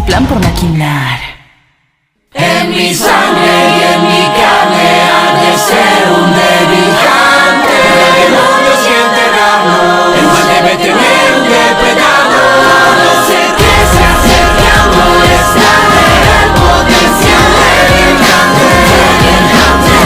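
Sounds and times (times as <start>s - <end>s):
choir singing held notes: 2.3s - 20.0s
deep bass: 13.6s - 20.0s.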